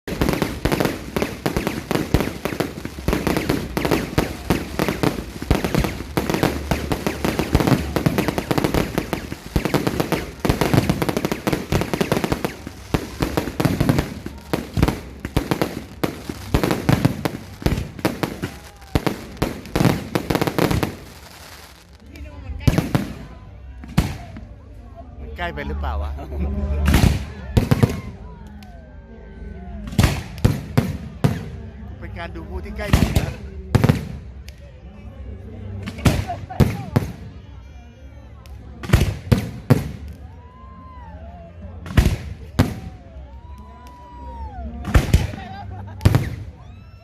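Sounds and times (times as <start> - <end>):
fireworks bangs and crackles: 0.0 - 24.5, 26.8 - 28.1, 29.9 - 31.6, 32.7 - 34.6, 35.8 - 37.4, 38.8 - 40.3, 41.8 - 43.0, 44.8 - 46.6.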